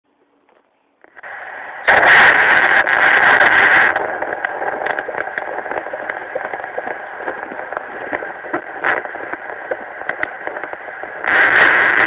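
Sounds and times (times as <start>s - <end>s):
fetal doppler monitor static hiss: 0.1s - 12.0s.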